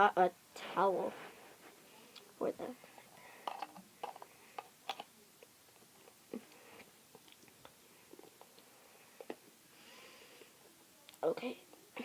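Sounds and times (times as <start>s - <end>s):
plastic containers clicking and tapping: 3.4s - 5.1s.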